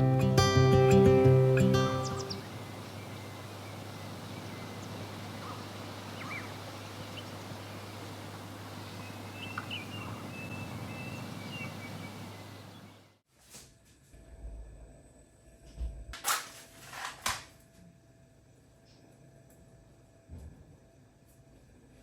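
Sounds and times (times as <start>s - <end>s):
low hum: 0.0s - 13.0s
steady rushing noise: 1.6s - 13.0s
faint bird chirps: 1.6s - 13.2s.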